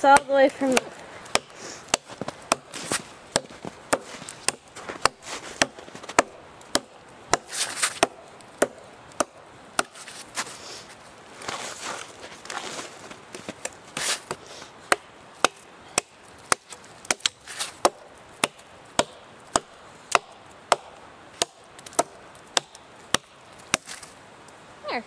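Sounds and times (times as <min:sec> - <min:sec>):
hatchet chopping into log: 0:00.2 - 0:10.0, 0:14.3 - 0:24.0
rustling: 0:00.5 - 0:06.3, 0:07.3 - 0:08.1, 0:09.8 - 0:14.9, 0:16.2 - 0:17.9, 0:23.0 - 0:24.2.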